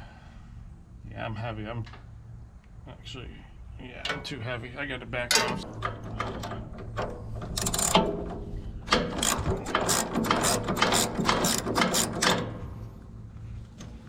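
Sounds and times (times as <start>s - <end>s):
rapid ratcheting clicks: 5.8s - 8.1s, 8.8s - 12.6s.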